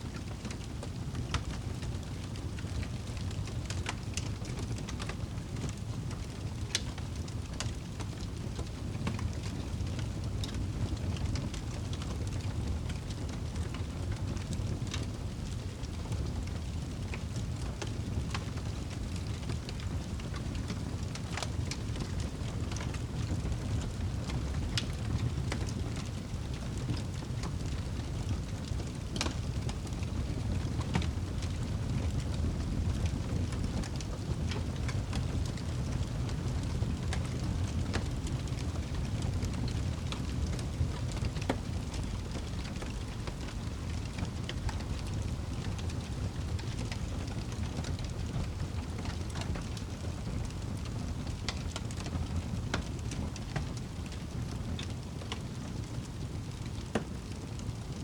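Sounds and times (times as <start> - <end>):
fire burning in fireplace: 0.0 - 58.0
fire crackling and popping: 0.0 - 58.0.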